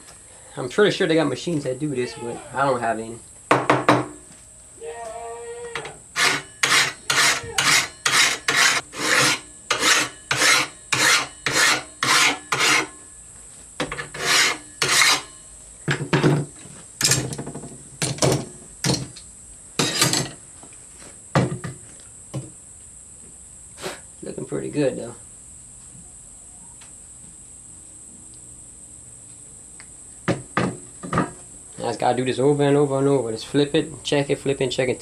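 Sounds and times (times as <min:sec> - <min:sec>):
file rasping on steel blade: 0:06.1 - 0:13.0, 0:14.0 - 0:15.4.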